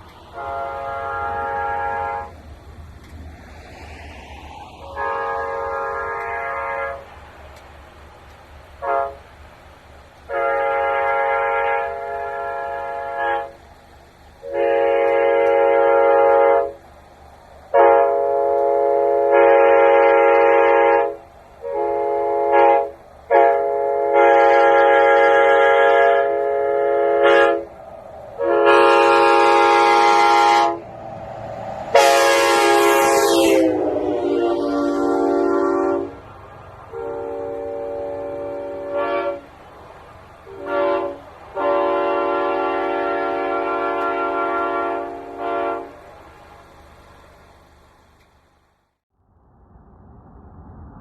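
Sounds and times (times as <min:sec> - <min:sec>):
train air horn blasts: 0:00.0 - 0:02.6, 0:03.7 - 0:07.8, 0:08.7 - 0:09.4, 0:10.1 - 0:48.1
high hiss: 0:00.0 - 0:23.9.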